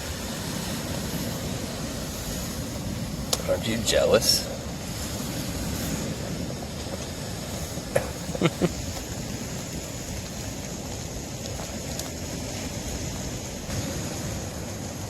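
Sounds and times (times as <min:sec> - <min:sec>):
rain: 0:00.0 - 0:15.0
wind and surf: 0:00.0 - 0:15.0.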